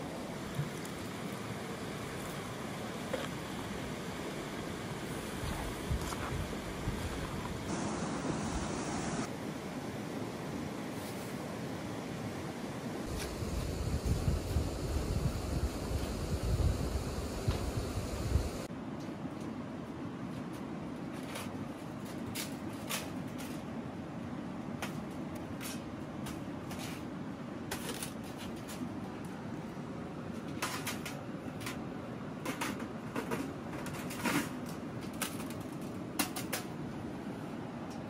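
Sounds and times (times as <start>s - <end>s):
low rushing noise: 3.8s - 10.7s.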